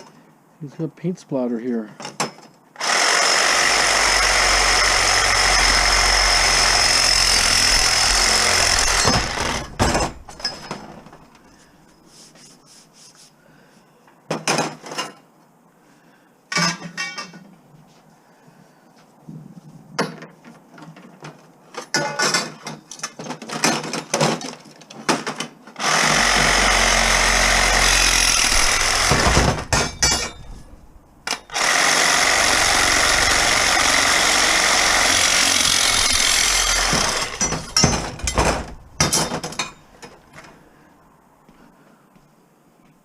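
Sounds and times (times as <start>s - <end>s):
handheld power tool running: 2.8s - 9.8s, 25.8s - 30.4s, 31.3s - 39.1s
metal knocking and rattling: 6.8s - 11.3s, 28.2s - 31.6s, 32.4s - 40.5s.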